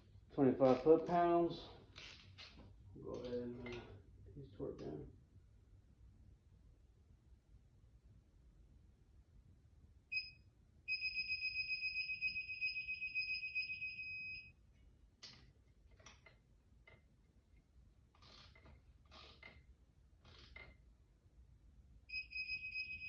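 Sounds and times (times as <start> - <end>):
torque wrench beeping: 22.1 - 23.0.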